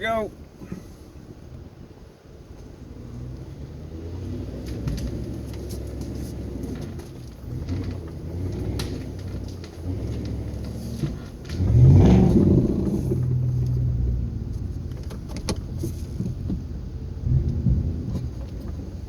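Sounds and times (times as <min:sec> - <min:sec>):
truck engine revving: 0:02.8 - 0:19.0
sharp cracks: 0:06.6 - 0:13.9.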